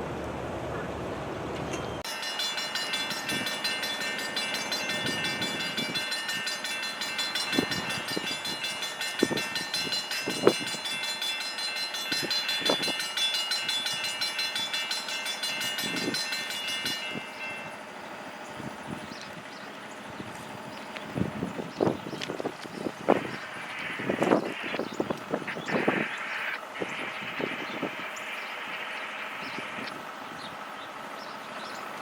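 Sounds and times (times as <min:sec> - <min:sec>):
train wheels knocking over rail joints: 0:01.7 - 0:17.8
high-pitched multi-tone whine: 0:01.8 - 0:30.6.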